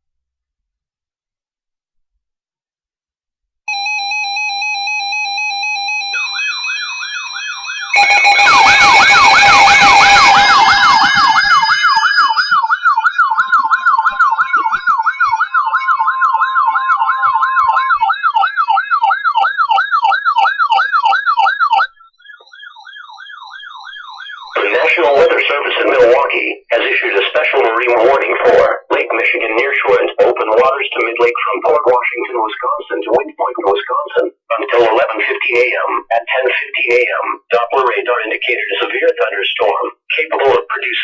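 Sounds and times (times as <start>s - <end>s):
electronic siren wailing: 3.7s - 27.0s.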